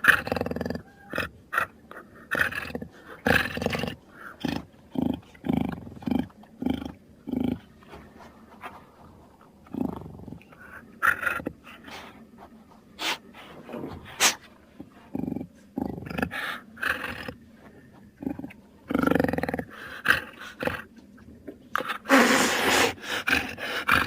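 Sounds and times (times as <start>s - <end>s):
jaguar growling and snarling: 0.0s - 7.8s, 9.6s - 12.2s, 13.0s - 17.5s, 18.2s - 20.9s, 21.8s - 24.0s
sharp hissing bursts: 22.1s - 23.0s.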